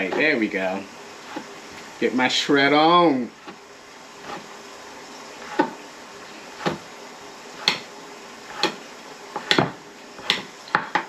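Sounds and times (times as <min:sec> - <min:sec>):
knocks on cutting board: 0:09.4 - 0:11.0.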